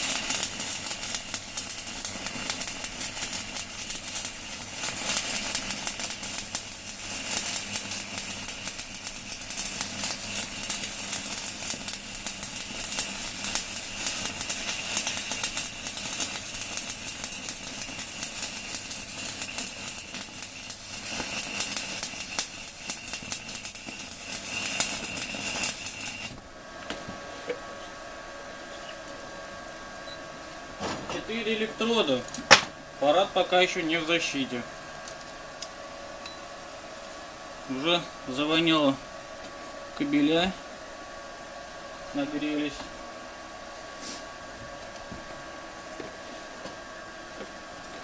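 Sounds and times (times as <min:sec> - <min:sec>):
welding arc crackling: 0:00.0 - 0:26.6, 0:30.0 - 0:40.6, 0:42.1 - 0:43.0
welder hum: 0:00.0 - 0:48.0.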